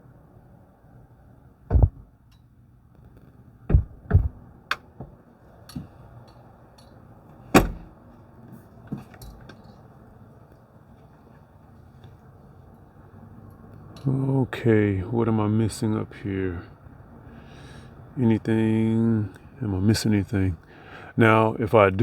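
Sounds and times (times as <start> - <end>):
heavy thumps: 1.7 - 2.2, 3.7 - 5.2, 7.5 - 8.0
light clicks and knocks: 3.0 - 9.9.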